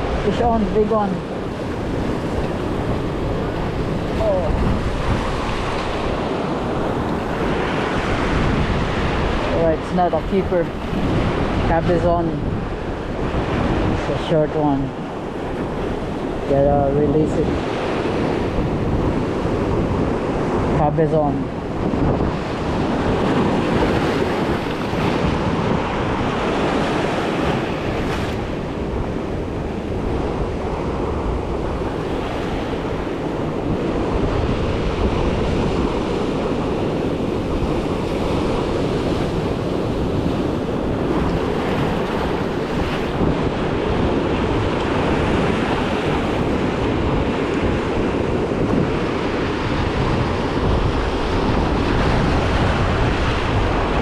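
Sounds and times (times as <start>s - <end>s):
ocean surf washing against rocks: 0.0s - 54.0s
wind buffeting microphone: 0.0s - 54.0s.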